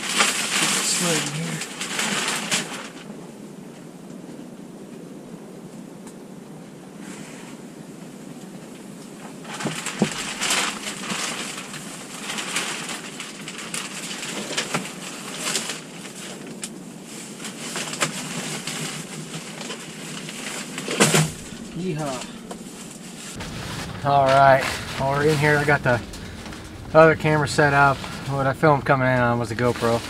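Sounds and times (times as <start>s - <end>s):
crunching and rustling in snow: 0.0s - 3.1s, 9.3s - 30.0s.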